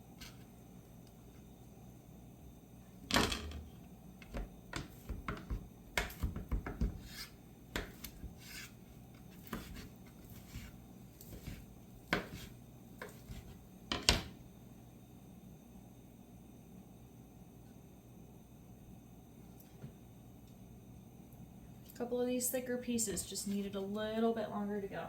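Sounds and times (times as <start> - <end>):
knife scraping strokes: 7.0 - 13.6.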